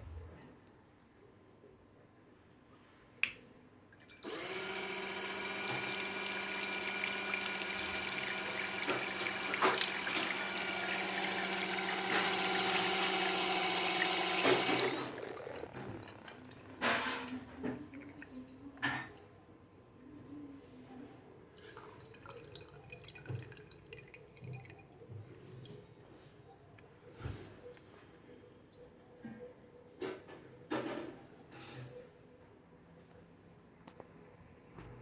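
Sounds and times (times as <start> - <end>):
small click: 3.2 - 3.4
fire alarm high-pitched tone: 4.2 - 15.1
low hum: 4.2 - 15.1.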